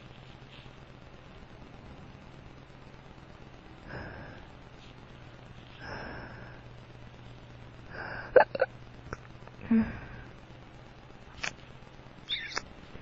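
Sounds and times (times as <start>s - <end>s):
man hiccuping: 8.4s - 8.7s.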